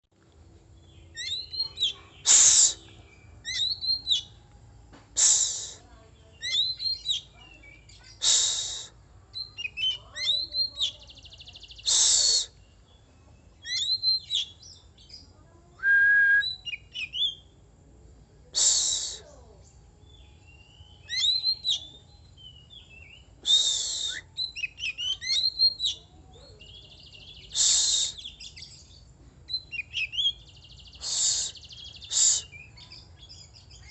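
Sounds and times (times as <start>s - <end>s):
bird singing chirps and whistles: 0.9s - 4.4s, 6.4s - 8.4s, 9.4s - 12.8s, 13.6s - 15.2s, 15.8s - 17.5s, 20.0s - 33.9s.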